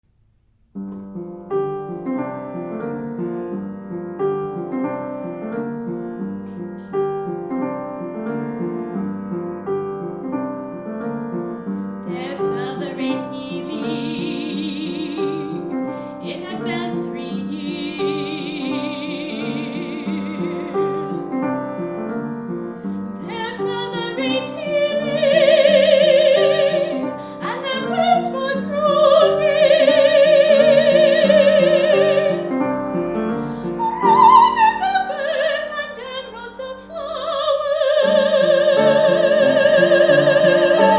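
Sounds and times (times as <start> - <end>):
piano: 0.0 - 40.9
woman singing classical song: 11.9 - 22.1, 22.9 - 40.9.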